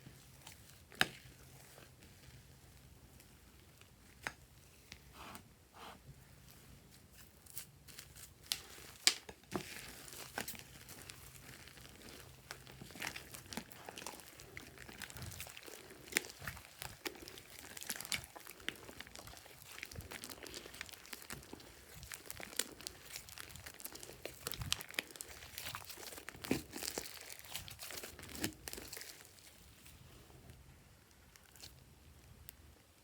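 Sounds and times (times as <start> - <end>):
slime crackling and popping: 7.4 - 30.2, 31.1 - 32.6.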